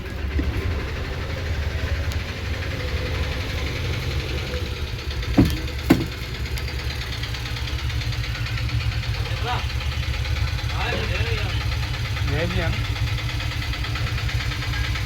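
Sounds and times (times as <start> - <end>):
diesel engine idling: 0.0 - 15.0
sharp knocks: 5.3 - 6.3.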